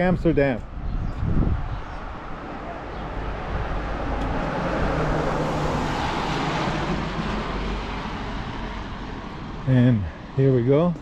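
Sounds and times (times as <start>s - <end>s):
car passing: 1.4s - 10.9s.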